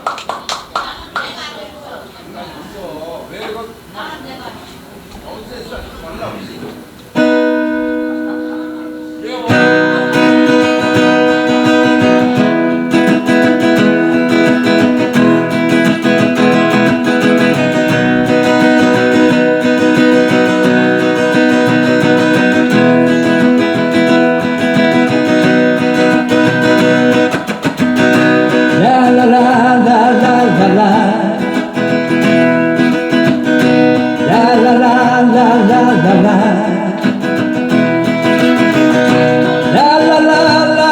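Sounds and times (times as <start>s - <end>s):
acoustic guitar strumming: 6.8s - 40.9s
wavering guitar melody line: 7.1s - 40.9s.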